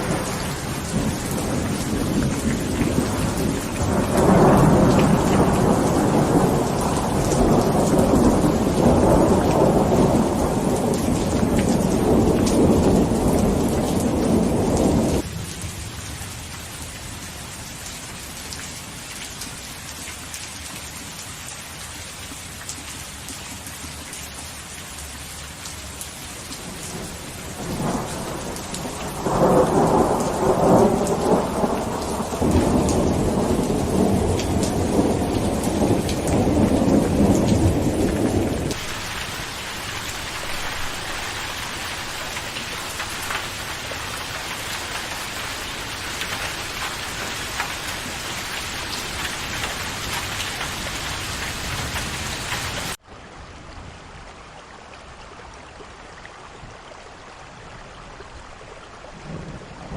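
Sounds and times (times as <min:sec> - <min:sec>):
rumble of thunder: 0:00.0 - 0:15.3, 0:26.9 - 0:39.4
steady rain: 0:00.0 - 0:59.9.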